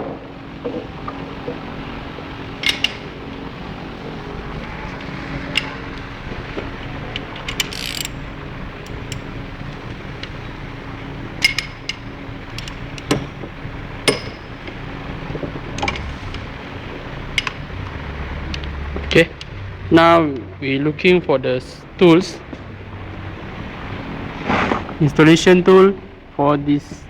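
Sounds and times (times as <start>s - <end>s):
steady background hum: 0.0s - 27.0s
metal tools clinking: 2.6s - 3.6s, 4.2s - 18.0s.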